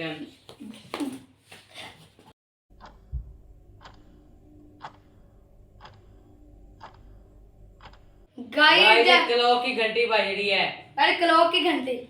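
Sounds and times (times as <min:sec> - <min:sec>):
clock ticking: 0:02.7 - 0:08.4.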